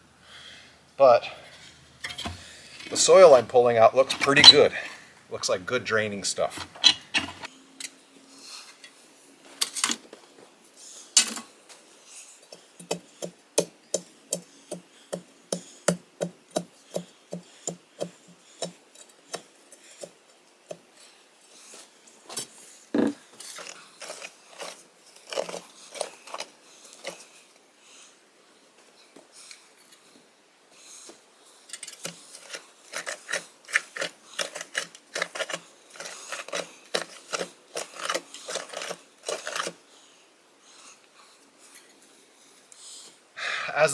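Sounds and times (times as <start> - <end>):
auger scraping squeaks: 4.0 - 5.0, 6.4 - 7.5.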